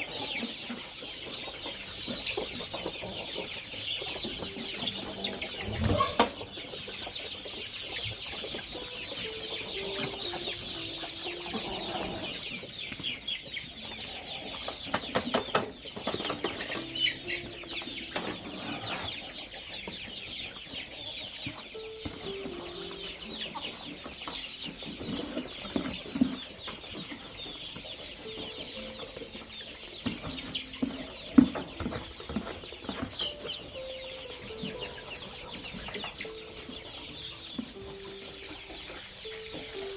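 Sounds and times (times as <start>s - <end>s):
chickens clucking: 0.0s - 39.9s
high-pitched chirping: 16.0s - 20.6s.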